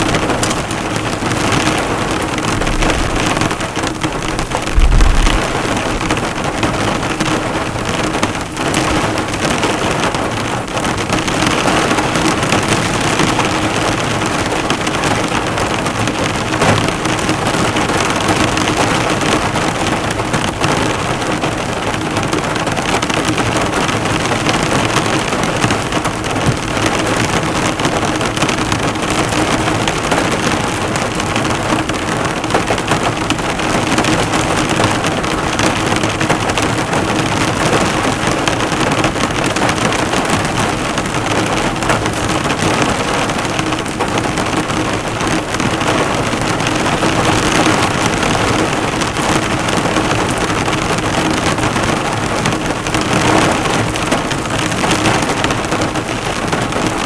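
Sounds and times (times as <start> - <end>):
heavy rain on a car: 0.0 - 57.0
low rumble: 2.5 - 6.5.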